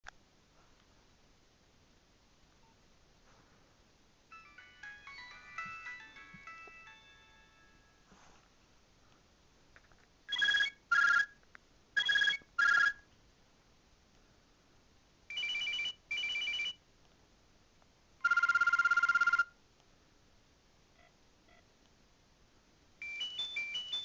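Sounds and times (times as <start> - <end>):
fast trilling phone ring: 4.3 - 8.1, 10.3 - 11.3, 12.0 - 13.0, 15.3 - 16.8, 18.2 - 19.5, 23.0 - 24.0
two-note electronic chime: 4.3 - 8.4
phone beeps: 10.3 - 11.3, 12.0 - 13.0, 18.2 - 19.5, 23.0 - 24.0.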